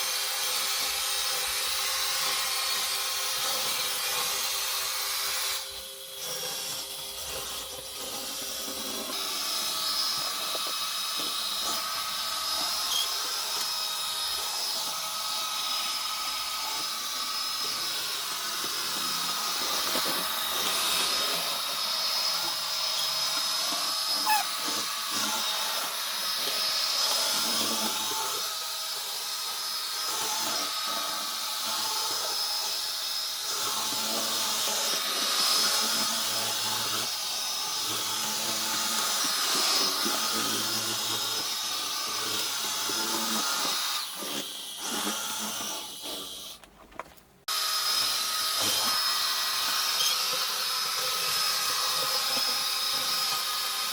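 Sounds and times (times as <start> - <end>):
robot vacuum cleaner whirring: 0.7 - 46.6, 47.5 - 53.9.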